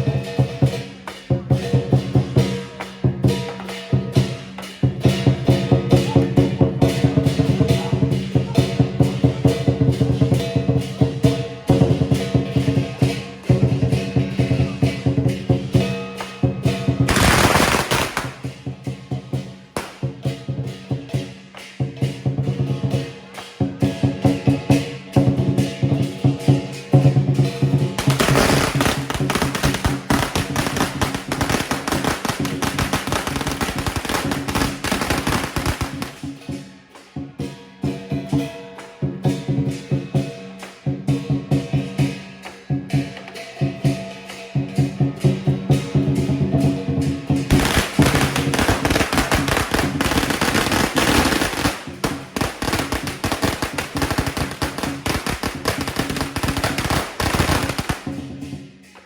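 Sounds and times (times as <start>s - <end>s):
lion dance drumming: 0.0s - 59.0s
ringing metal percussion: 0.0s - 59.0s
firecrackers crackling: 15.1s - 19.0s, 19.8s - 20.4s, 27.9s - 36.6s, 47.3s - 59.0s.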